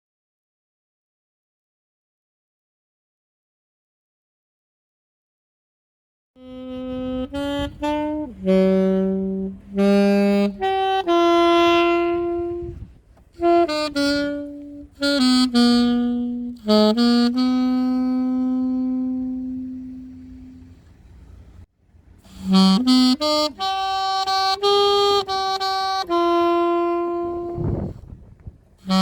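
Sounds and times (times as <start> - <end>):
alto saxophone playing slow melody: 6.4 - 29.0.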